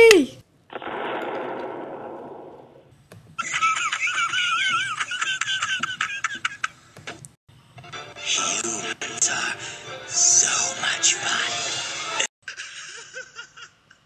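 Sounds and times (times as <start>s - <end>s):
bomb explosion: 0.7s - 2.9s
high wavering cackling laugh: 3.4s - 6.8s.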